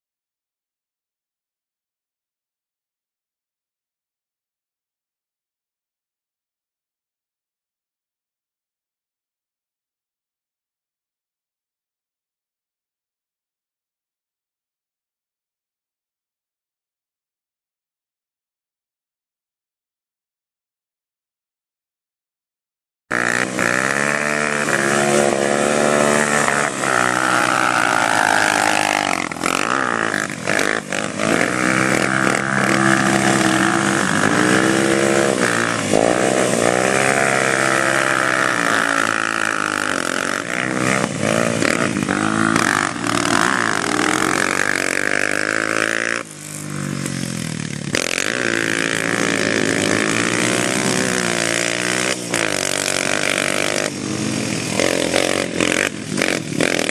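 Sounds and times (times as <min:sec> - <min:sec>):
quad engine revving: 0:23.1 - 0:56.9.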